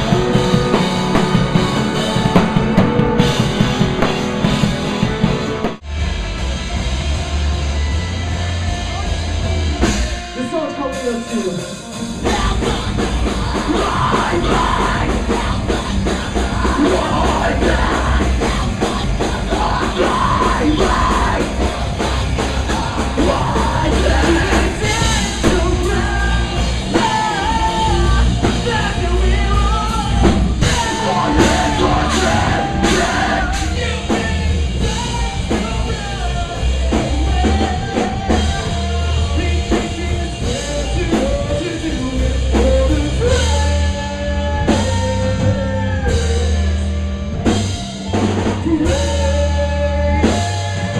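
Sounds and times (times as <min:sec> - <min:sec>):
drum kit: 0:00.0 - 0:50.9
guitars: 0:00.0 - 0:50.9
rock band playing: 0:00.0 - 0:50.9
person singing and yelling: 0:10.1 - 0:46.9, 0:48.5 - 0:50.9.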